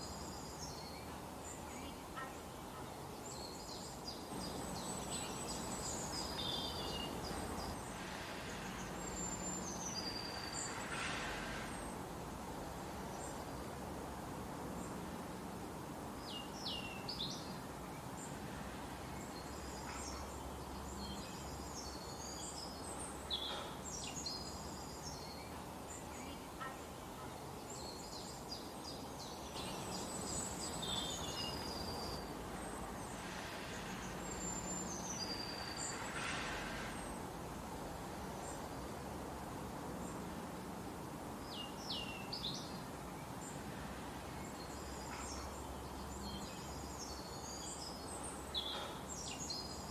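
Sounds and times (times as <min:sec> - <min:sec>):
birds chirping and trilling: 0:00.0 - 0:12.0, 0:19.1 - 0:33.2, 0:33.8 - 0:37.2
outdoor ambience rush: 0:00.0 - 0:49.9.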